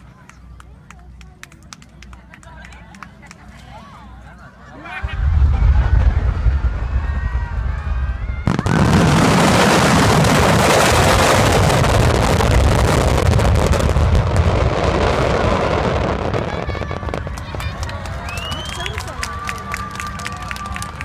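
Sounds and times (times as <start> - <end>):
fireworks booming and crackling: 5.0 - 18.7.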